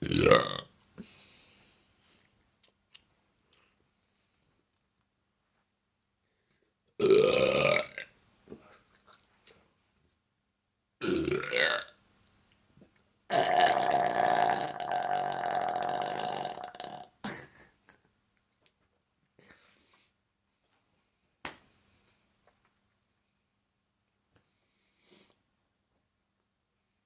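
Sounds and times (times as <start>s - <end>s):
woman burping: 0.0s - 0.6s, 7.0s - 8.0s, 13.3s - 17.4s.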